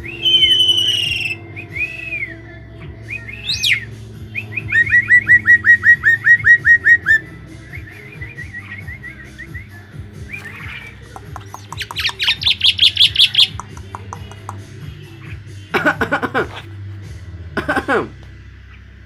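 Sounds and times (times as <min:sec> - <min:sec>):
harsh bird rasp: 0:00.0 - 0:17.4
high bird chattering: 0:00.0 - 0:18.9
starling chirping: 0:00.0 - 0:19.0.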